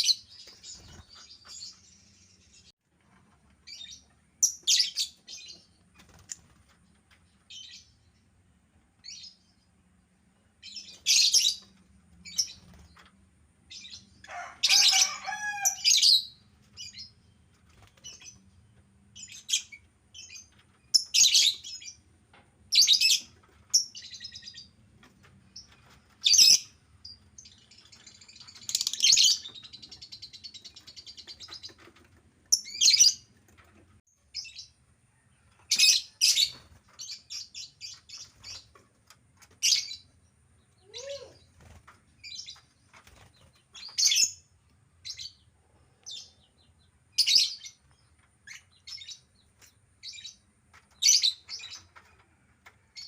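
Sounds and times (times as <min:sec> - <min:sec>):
lovebirds chirping: 0:00.0 - 0:02.8, 0:25.4 - 0:33.4.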